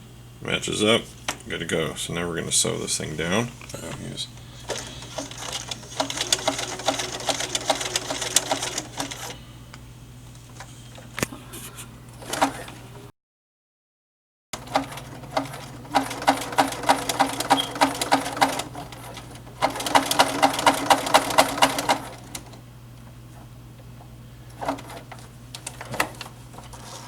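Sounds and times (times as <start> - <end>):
sewing machine motor hum: 3.8 - 9.4, 12.1 - 13.1, 14.6 - 22.7, 23.4 - 27.0
sewing machine stitching: 4.6 - 9.4, 12.2 - 12.8, 14.6 - 22.6, 24.5 - 27.0.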